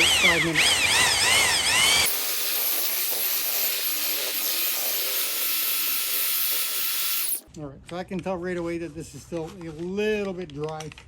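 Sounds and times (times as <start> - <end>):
drill mixing mortar: 0.0 - 7.4.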